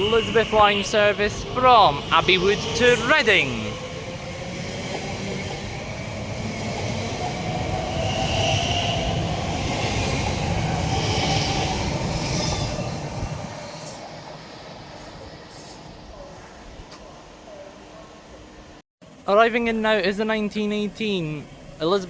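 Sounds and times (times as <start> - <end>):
train wheels rumbling on rail: 0.0 - 16.2.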